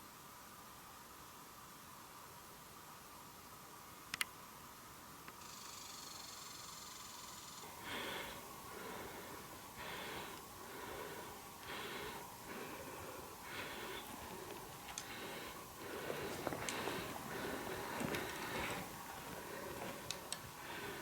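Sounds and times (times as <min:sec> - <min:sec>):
rhythmic airy breathing: 0:07.6 - 0:21.0.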